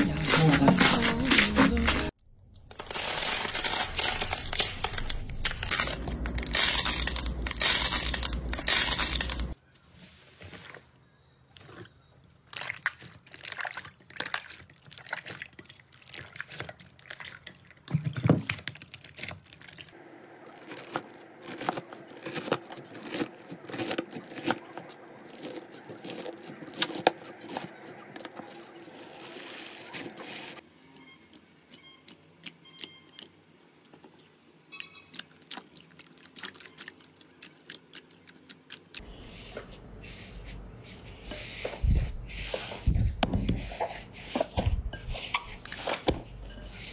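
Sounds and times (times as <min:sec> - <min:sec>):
slime squishing and crackling: 0:12.4 - 0:30.6, 0:35.0 - 0:39.0.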